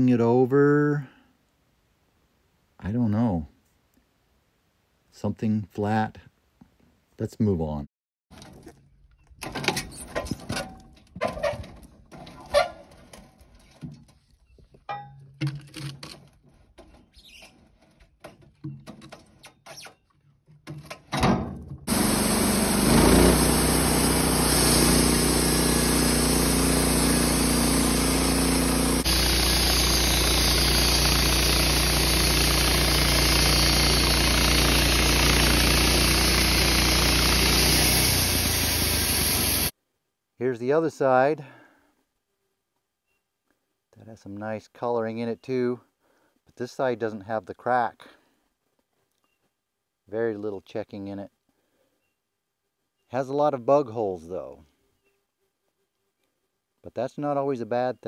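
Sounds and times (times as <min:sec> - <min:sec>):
engine running steadily: 0:21.9 - 0:39.7.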